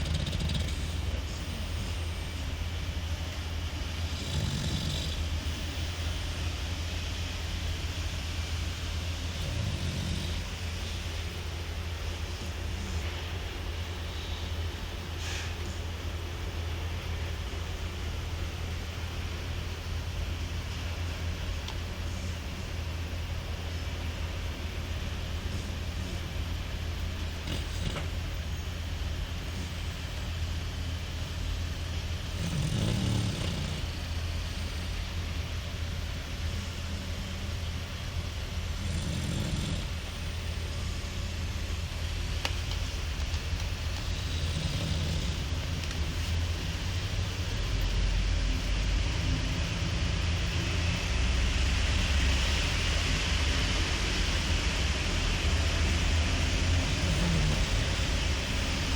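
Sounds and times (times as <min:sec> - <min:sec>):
pet snoring: 0:00.0 - 0:58.9
steady hiss: 0:00.0 - 0:58.9
steady low hum: 0:00.0 - 0:58.9.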